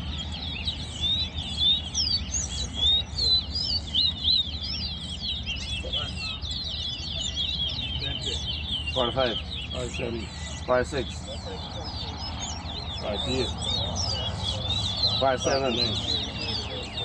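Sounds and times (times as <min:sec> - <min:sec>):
finches twittering warble: 0:00.0 - 0:17.0.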